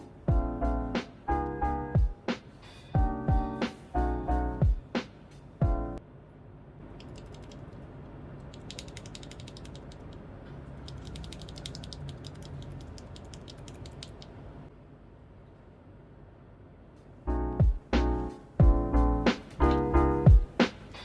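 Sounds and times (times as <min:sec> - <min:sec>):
mechanical keyboard typing: 0:07.0 - 0:07.8, 0:08.4 - 0:10.2, 0:10.8 - 0:14.4.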